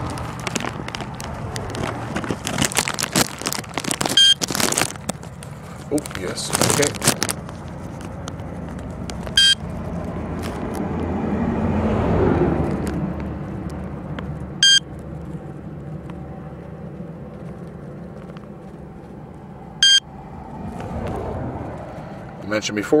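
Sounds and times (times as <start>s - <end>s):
car passing: 0.0s - 4.0s, 4.7s - 23.0s
short high electronic beep: 14.6s - 14.8s, 19.8s - 20.0s.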